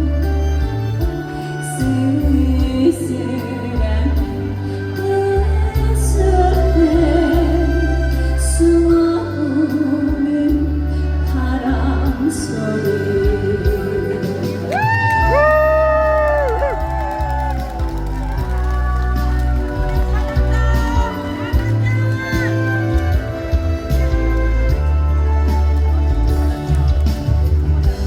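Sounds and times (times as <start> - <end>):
bass and drums backing track: 0.0 - 28.0
woman singing with vibrato: 1.6 - 16.8.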